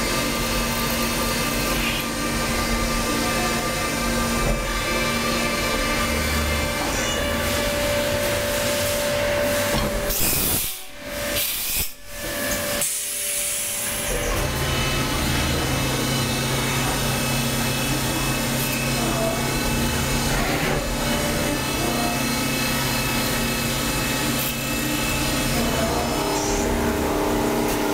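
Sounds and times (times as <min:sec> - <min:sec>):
machining center running: 0:00.0 - 0:27.9.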